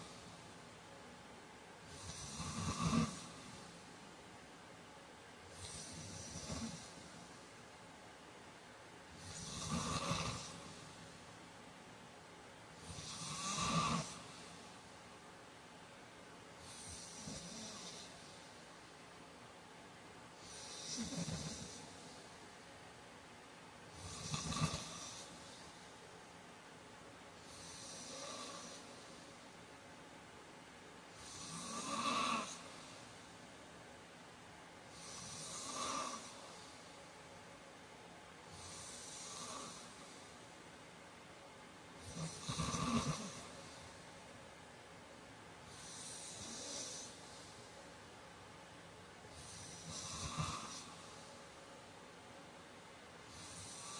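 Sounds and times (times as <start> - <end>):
man snoring: 1.9 - 3.8, 5.6 - 7.0, 9.2 - 11.0, 12.8 - 14.6, 16.7 - 18.2, 20.4 - 21.9, 23.9 - 25.4, 27.5 - 28.9, 31.2 - 32.8, 34.9 - 36.6, 38.6 - 40.0, 42.0 - 43.6, 45.7 - 47.2, 49.4 - 51.2, 53.3 - 53.9.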